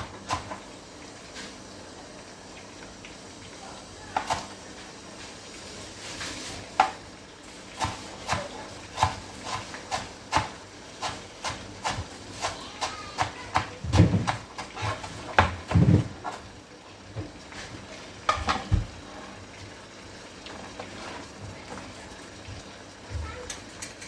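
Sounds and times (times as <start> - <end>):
utensils tapping cookware: 23.4 - 24.0.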